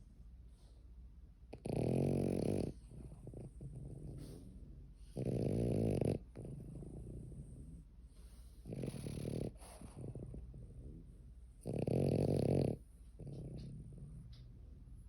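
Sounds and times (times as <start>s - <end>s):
loud snoring: 1.5s - 4.4s, 5.1s - 7.8s, 8.6s - 11.0s, 11.6s - 14.1s.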